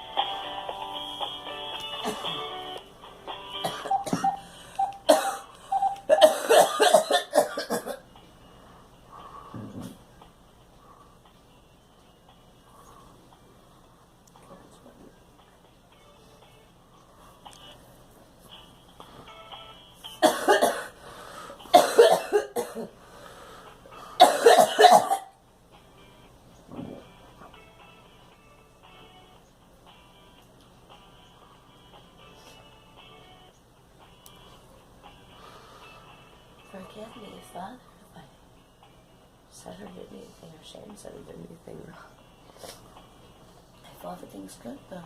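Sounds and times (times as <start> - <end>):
music: 0.0 - 45.0
girl coughing: 2.0 - 2.4, 3.6 - 4.4, 5.1 - 5.5, 6.1 - 8.0, 20.2 - 21.0, 21.7 - 22.9, 24.2 - 25.3.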